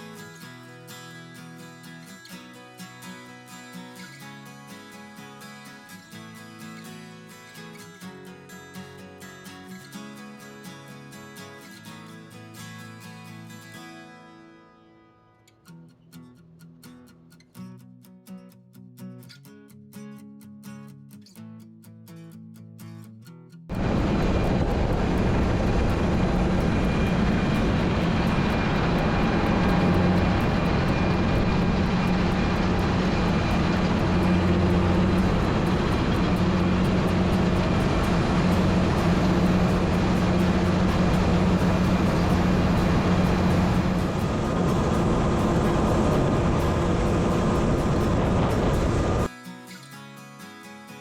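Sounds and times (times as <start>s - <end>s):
fine rapid ticking: 23.7s - 49.3s
heavy machinery engine drone: 23.7s - 49.3s
low hum: 23.7s - 49.3s.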